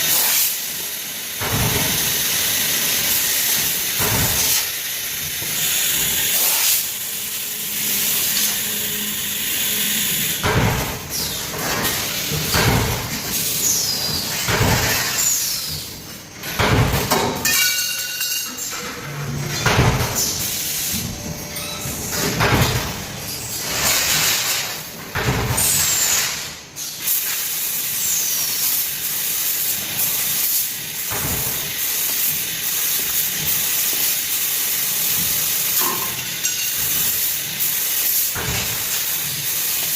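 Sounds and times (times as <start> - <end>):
laser cutting hiss: 0.0 - 15.8, 20.1 - 21.1, 25.6 - 39.9
machine knocks and clunks: 1.4 - 2.1, 4.0 - 4.6, 10.4 - 13.3, 14.1 - 17.4, 19.5 - 20.4, 21.2 - 23.2, 25.0 - 25.8, 31.1 - 31.6.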